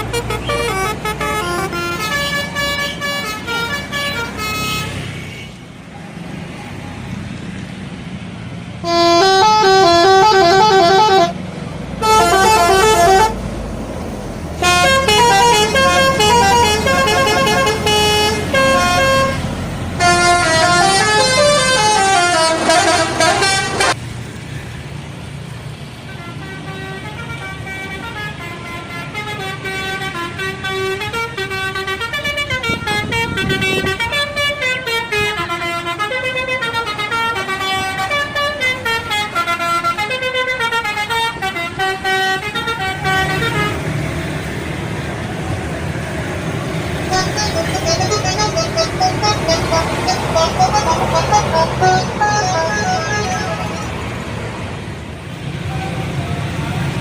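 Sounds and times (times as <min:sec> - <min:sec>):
multi-tone air horn melody: 0:00.0 - 0:05.6, 0:08.8 - 0:11.4, 0:12.0 - 0:13.4, 0:14.6 - 0:24.0, 0:26.2 - 0:43.8, 0:47.0 - 0:54.4
bus engine and traffic rumble: 0:00.0 - 0:57.0.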